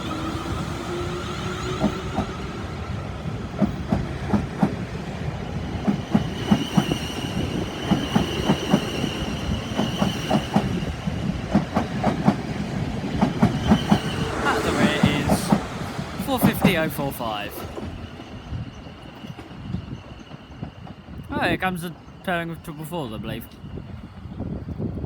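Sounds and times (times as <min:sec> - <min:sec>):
train wheels clicking over rail joints: 0:03.4 - 0:21.3.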